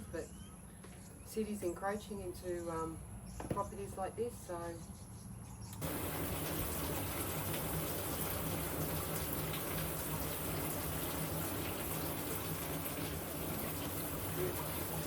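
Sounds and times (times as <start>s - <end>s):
water rushing: 5.8s - 15.0s.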